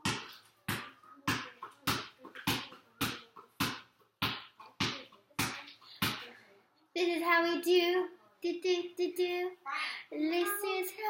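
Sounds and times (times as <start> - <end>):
sharp rhythmic slaps: 0.0 - 6.4.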